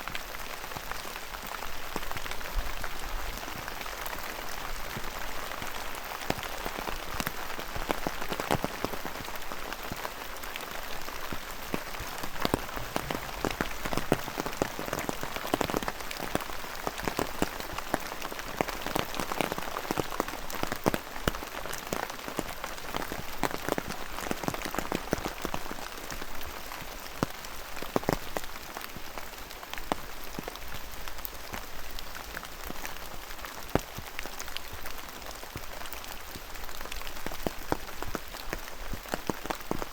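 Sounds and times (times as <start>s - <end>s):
rain falling steadily: 0.0s - 39.9s.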